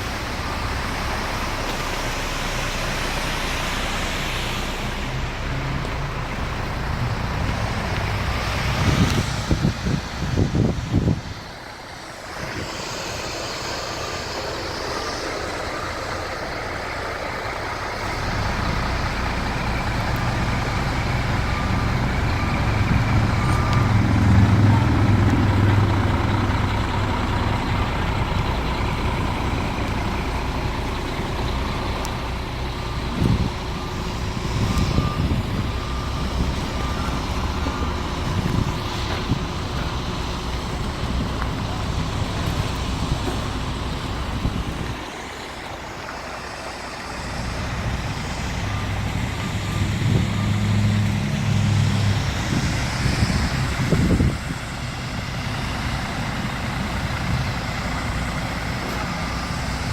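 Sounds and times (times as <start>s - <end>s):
diesel engine running: 0.0s - 59.9s
backup alarm beeping: 18.0s - 26.6s, 29.0s - 40.8s.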